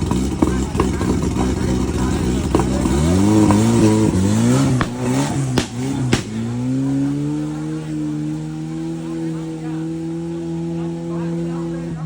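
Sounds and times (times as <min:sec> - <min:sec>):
buggy engine revving: 0:00.0 - 0:12.0
sharp cracks: 0:02.3 - 0:06.8.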